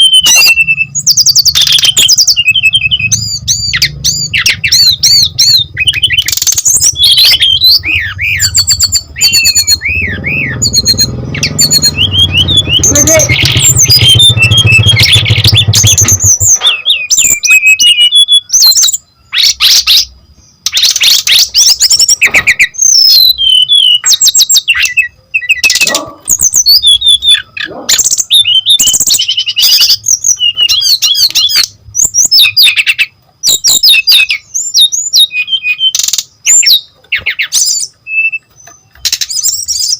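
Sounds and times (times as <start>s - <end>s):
bird singing whistles and trills: 0.0s - 39.9s
low rumble: 2.4s - 17.4s.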